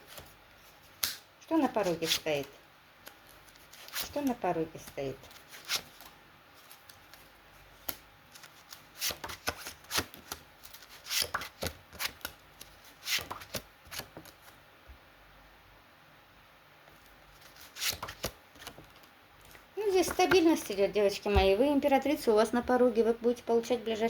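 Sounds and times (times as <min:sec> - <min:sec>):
cards being shuffled: 0:03.0 - 0:14.6, 0:17.4 - 0:19.1, 0:20.0 - 0:20.6.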